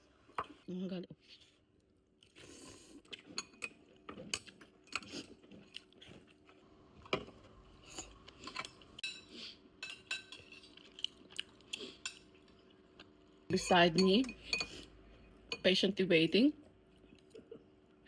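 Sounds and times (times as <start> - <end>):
utensils clinking against dishes: 7.8 - 10.8, 13.5 - 14.9.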